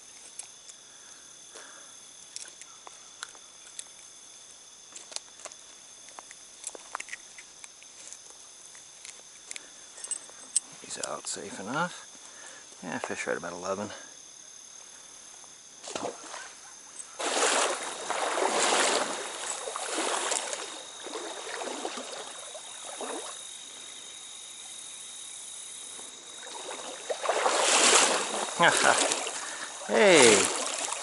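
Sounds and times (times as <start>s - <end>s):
crickets trilling: 0.0s - 31.0s
water splashing and swishing: 15.8s - 16.6s, 17.2s - 23.9s, 26.0s - 31.0s.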